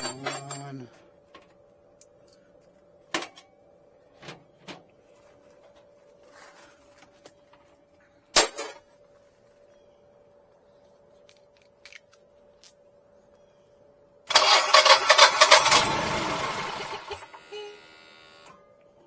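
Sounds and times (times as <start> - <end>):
generator engine cranking: 14.3 - 18.6.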